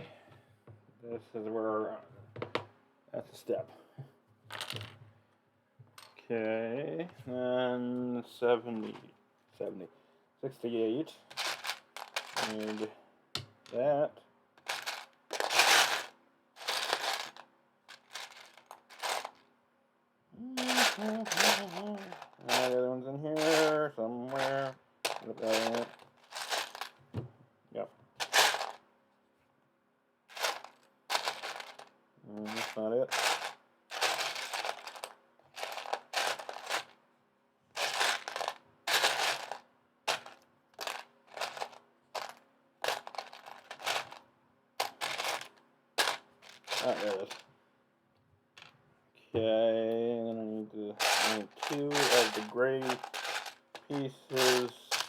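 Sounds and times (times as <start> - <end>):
faint fan hum: 0.0 - 55.0
plastic toy bricks clattering: 11.3 - 12.9, 14.6 - 19.4, 20.6 - 22.8, 23.4 - 27.0, 28.2 - 28.8, 30.3 - 37.0, 37.8 - 44.2, 44.8 - 47.4, 51.0 - 55.0.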